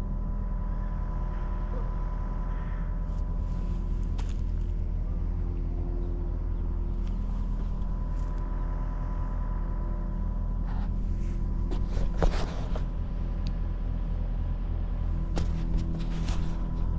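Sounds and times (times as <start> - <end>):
engine humming: 0.0 - 16.9.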